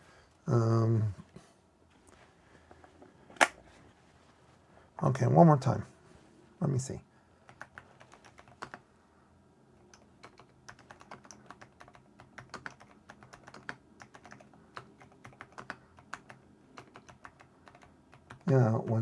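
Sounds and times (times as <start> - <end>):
mechanical keyboard typing: 7.5 - 8.8, 9.9 - 19.0.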